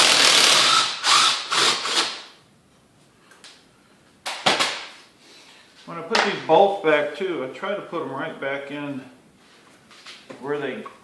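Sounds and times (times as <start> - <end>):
power drill bursts: 0.0 - 2.2.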